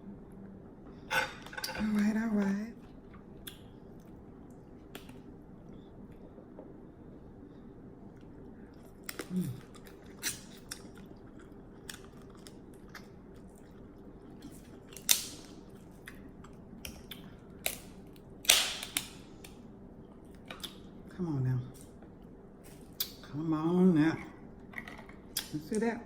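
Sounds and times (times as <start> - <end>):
chewing and smacking: 2.8 - 6.4, 8.1 - 21.0
crab shells cracking: 14.3 - 19.6.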